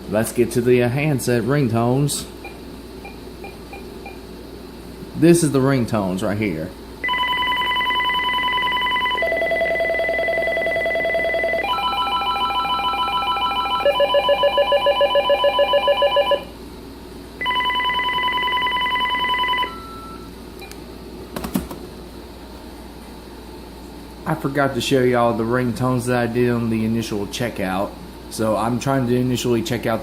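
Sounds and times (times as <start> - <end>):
cordless phone ringtones: 7.0 - 16.5, 17.4 - 20.3.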